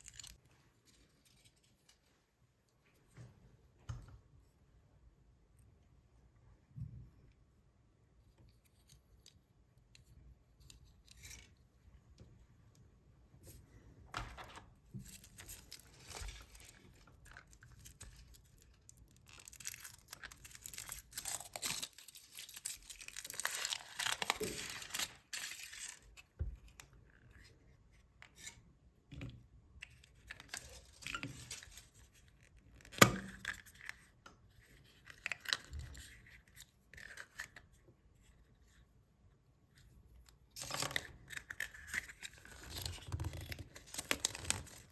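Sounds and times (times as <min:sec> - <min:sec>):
foil wrappers crinkling: 0:15.2 - 0:26.0.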